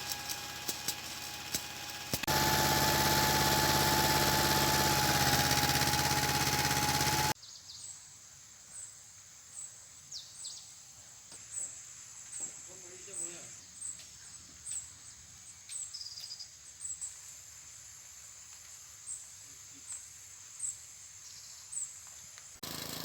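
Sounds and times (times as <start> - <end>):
diesel truck engine running: 0.0 - 7.4, 22.6 - 23.0.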